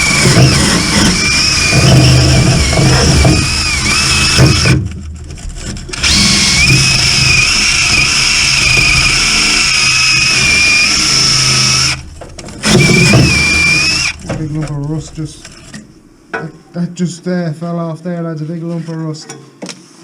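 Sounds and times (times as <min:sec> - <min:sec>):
power tool whining: 0:00.0 - 0:05.0, 0:05.6 - 0:14.4.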